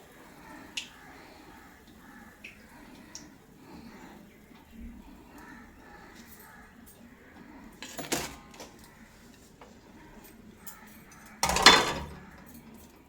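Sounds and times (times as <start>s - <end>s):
clattering handling noises: 7.8s - 8.9s, 10.8s - 13.0s.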